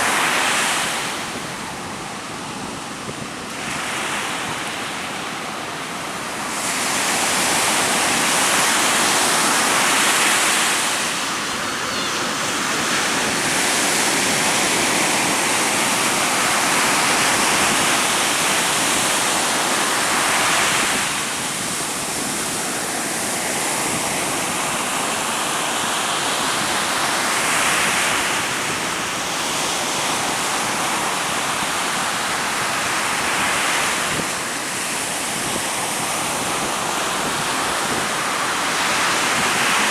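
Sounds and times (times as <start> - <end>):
ocean surf breaking: 0.0 - 39.9
strong wind blowing: 6.4 - 23.0.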